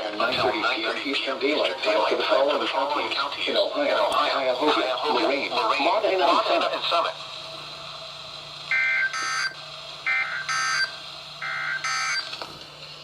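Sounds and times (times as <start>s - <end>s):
faint steady hum: 0.0s - 13.0s
high-pitched digital data tones: 8.7s - 12.3s.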